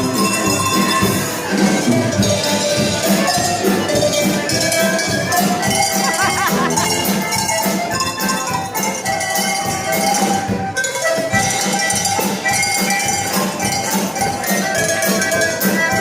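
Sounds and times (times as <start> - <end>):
cowbells ringing: 0.0 - 16.0.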